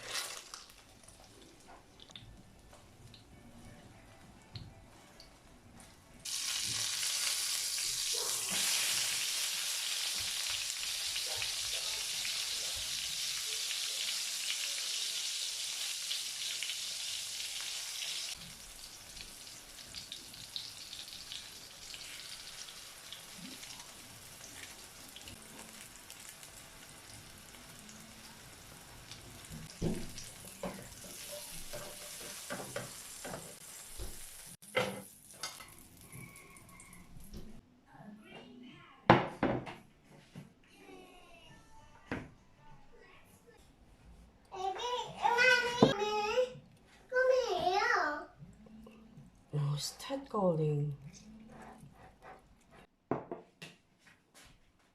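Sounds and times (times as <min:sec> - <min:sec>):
food sizzling in a pan: 0:00.0 - 0:01.3, 0:06.2 - 0:37.3.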